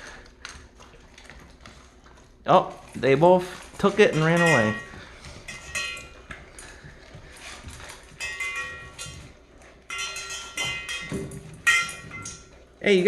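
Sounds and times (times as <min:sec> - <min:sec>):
dog claws clicking on hard floor: 0:02.9 - 0:12.7.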